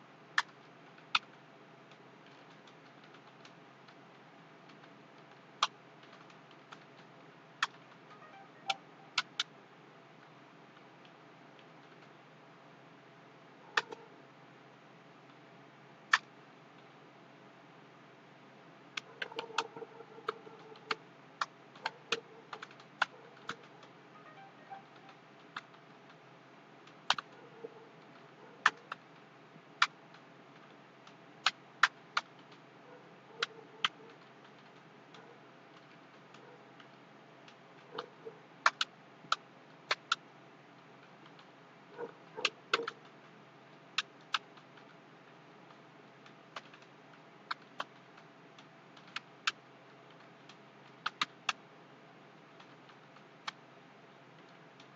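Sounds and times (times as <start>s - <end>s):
typing on a keyboard: 0.4s - 4.0s, 19.1s - 26.2s, 42.4s - 43.2s, 45.7s - 51.6s.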